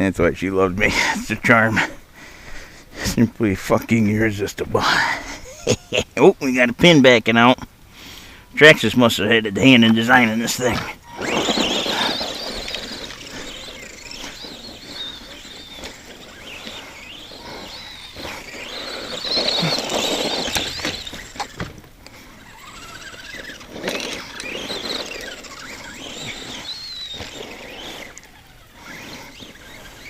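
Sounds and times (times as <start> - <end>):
electric toy truck motor whining: 10.0 - 30.0.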